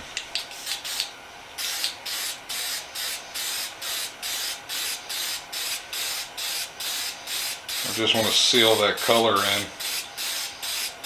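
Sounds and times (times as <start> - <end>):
spray can hissing bursts: 0.5 - 11.0.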